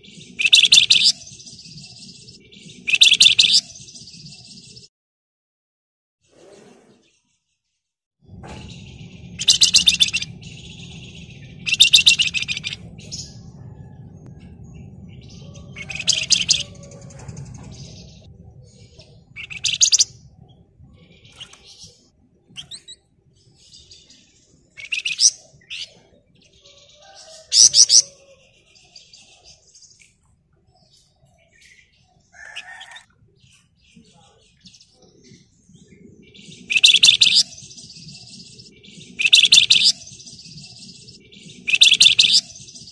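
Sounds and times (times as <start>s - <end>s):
bird chirps: 0.0s - 4.9s, 8.3s - 42.9s
low rumble: 8.2s - 24.8s
songbird rattling trills: 8.6s - 13.8s, 14.5s - 18.3s, 19.3s - 20.2s.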